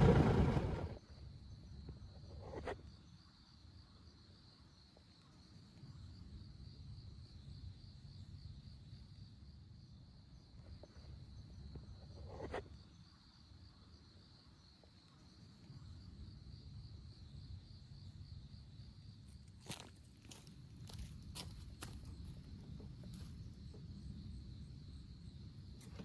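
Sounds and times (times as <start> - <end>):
low outdoor rumble: 0.0 - 1.0
crickets chirping: 0.0 - 26.0.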